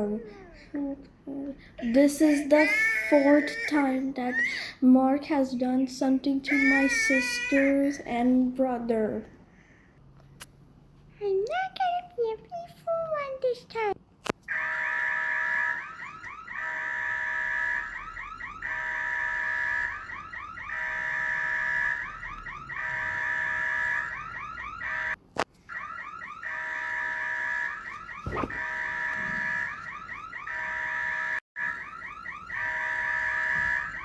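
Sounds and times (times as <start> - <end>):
warbling electronic alarm: 14.5 - 34.0.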